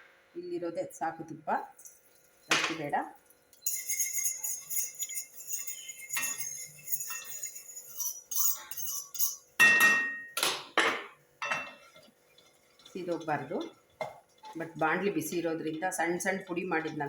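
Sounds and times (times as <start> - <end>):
spoon clinking against pan: 3.6 - 10.4, 11.4 - 12.1
faint sizzle: 11.2 - 17.0.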